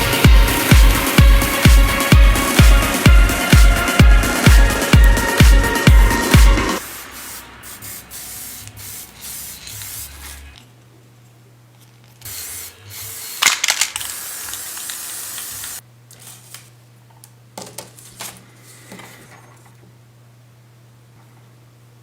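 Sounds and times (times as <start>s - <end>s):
spray paint hissing: 0.0s - 10.6s, 12.2s - 15.8s.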